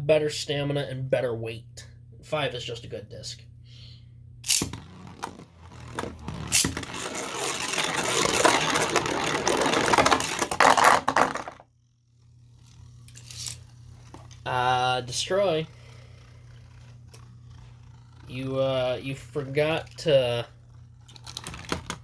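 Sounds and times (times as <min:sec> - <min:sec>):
spinning tops clashing in plastic stadium: 0:04.4 - 0:11.6, 0:12.6 - 0:14.4.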